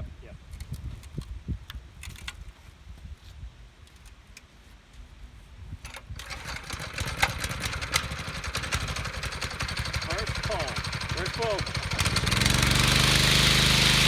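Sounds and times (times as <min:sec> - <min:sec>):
small petrol engine running: 0:05.9 - 0:14.0.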